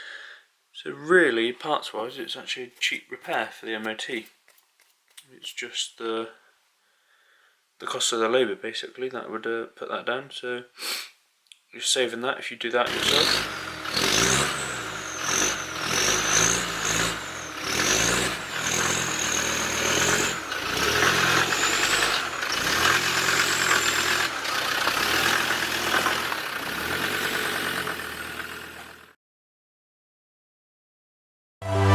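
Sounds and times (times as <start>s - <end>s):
vehicle engine revving: 12.9s - 29.1s.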